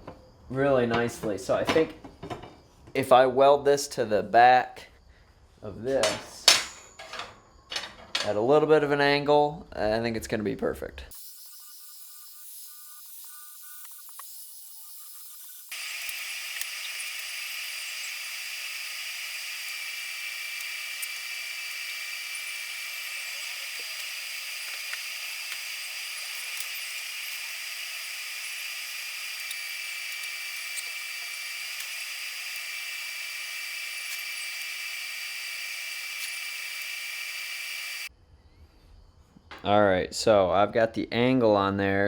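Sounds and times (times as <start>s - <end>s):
welding arc hissing and crackling: 11.1s - 38.1s.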